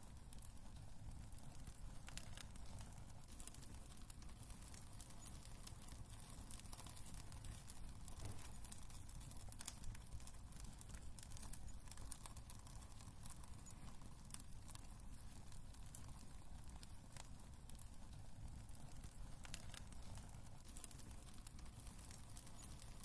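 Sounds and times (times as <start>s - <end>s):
wood fire crackling and popping: 0.0s - 23.0s.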